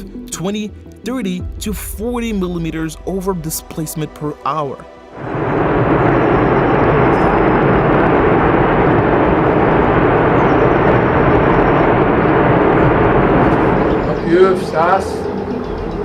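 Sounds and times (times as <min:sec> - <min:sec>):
rumbling rush of moving rock: 0:05.1 - 0:16.0.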